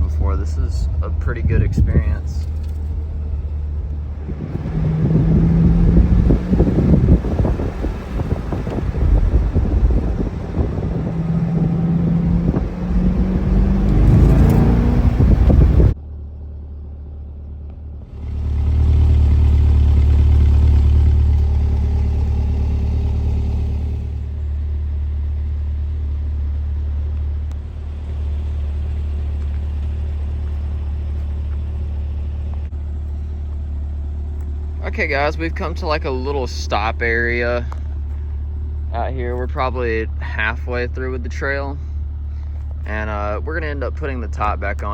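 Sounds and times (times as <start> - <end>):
car engine revving: 0.0 - 16.0, 18.0 - 25.4, 27.4 - 44.9
wind buffeting microphone: 0.0 - 16.0
engine idling with deep hum: 0.0 - 44.9.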